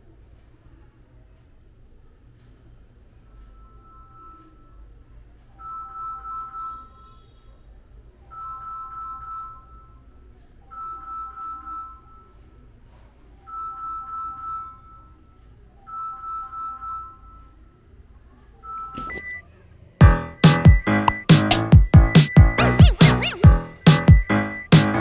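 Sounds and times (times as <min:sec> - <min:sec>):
electronic ringing tone: 0:20.0 - 0:24.9.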